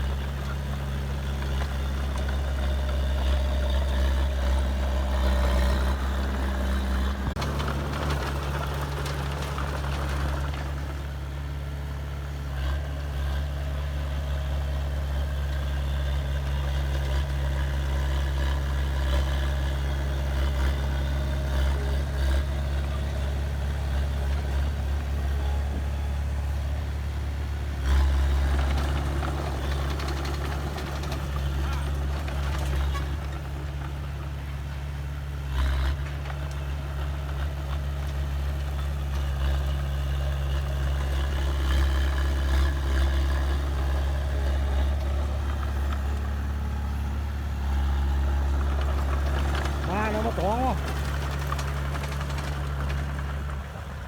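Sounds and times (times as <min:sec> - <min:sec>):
heavy diesel engine running: 0:00.0 - 0:54.0.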